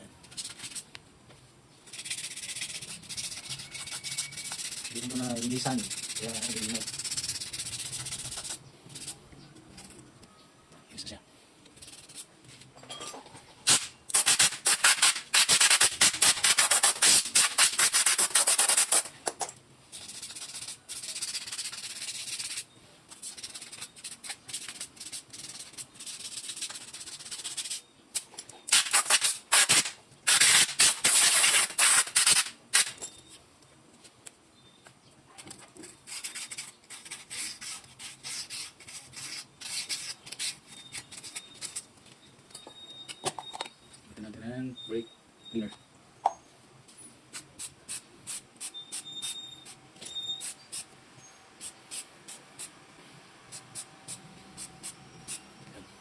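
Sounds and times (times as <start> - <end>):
sandpaper scraping metal: 0.2 - 0.9, 1.8 - 9.2, 11.8 - 12.4, 13.6 - 19.2, 19.9 - 27.8, 28.7 - 33.0, 36.0 - 41.9.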